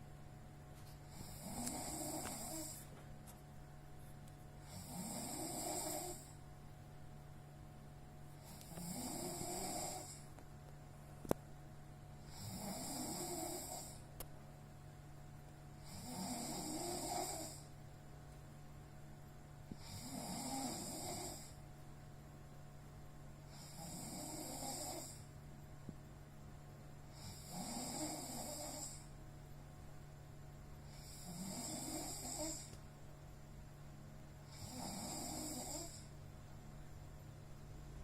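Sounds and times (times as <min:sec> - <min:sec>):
steady low hum: 0:00.0 - 0:38.0
person snoring: 0:01.1 - 0:02.9, 0:04.6 - 0:06.4, 0:08.4 - 0:10.3, 0:12.2 - 0:14.1, 0:15.8 - 0:17.7, 0:19.8 - 0:21.6, 0:23.5 - 0:25.3, 0:27.1 - 0:29.1, 0:30.8 - 0:32.8, 0:34.4 - 0:36.2.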